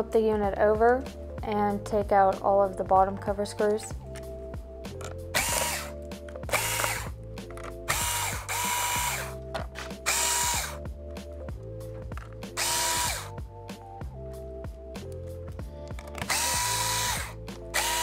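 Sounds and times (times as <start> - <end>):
background music: 0.0 - 18.0
electric screwdriver whirring: 5.4 - 7.1, 7.9 - 9.4, 10.0 - 10.8, 12.6 - 13.3, 16.2 - 18.0.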